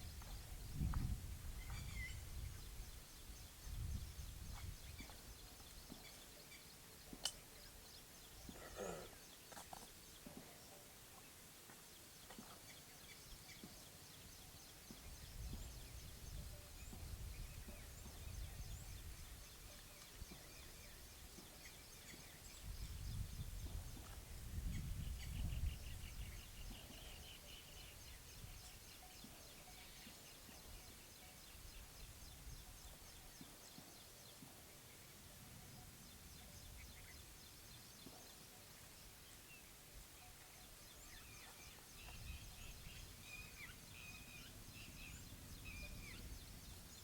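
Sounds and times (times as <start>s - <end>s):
low wind rumble: 0.0s - 5.0s, 22.4s - 26.7s, 42.2s - 47.0s.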